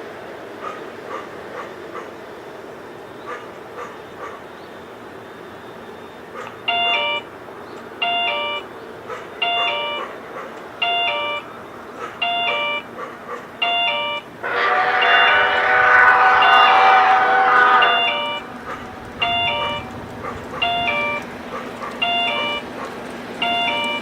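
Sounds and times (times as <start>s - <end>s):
loud sound with steady tones: 13.6s - 24.0s.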